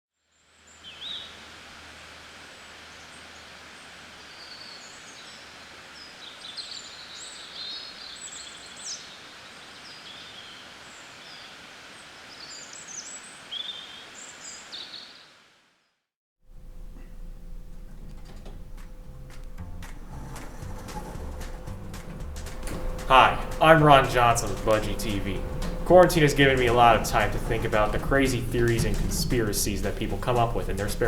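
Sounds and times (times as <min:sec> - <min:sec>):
outdoor background hiss: 0:00.2 - 0:31.0
birds chirping and singing: 0:04.3 - 0:10.6.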